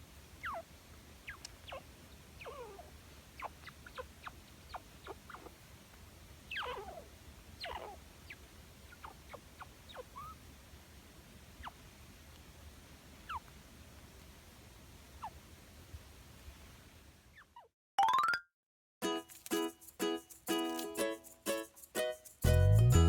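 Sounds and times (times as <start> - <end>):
chinchilla squeaking: 0.4 - 5.6, 6.4 - 10.4, 11.6 - 11.9, 13.2 - 13.6, 15.2 - 15.4, 17.3 - 17.7.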